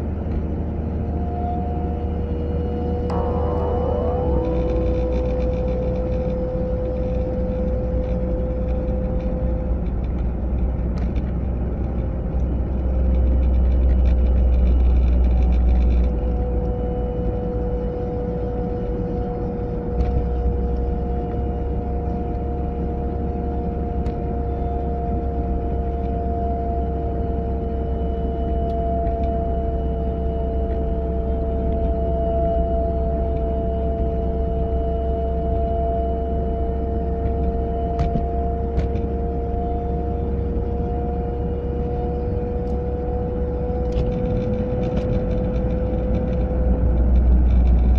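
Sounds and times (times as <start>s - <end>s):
low road rumble: 0.0s - 47.9s
steady whine: 0.0s - 47.9s
higher whine: 1.0s - 22.8s.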